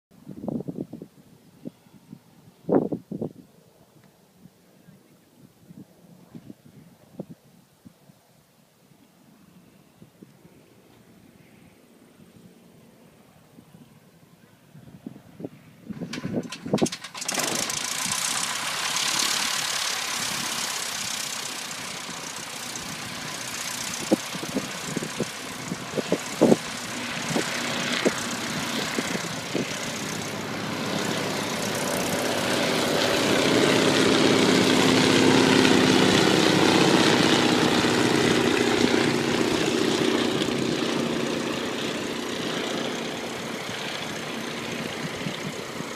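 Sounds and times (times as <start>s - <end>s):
light aircraft engine drone: 0.2s - 45.9s.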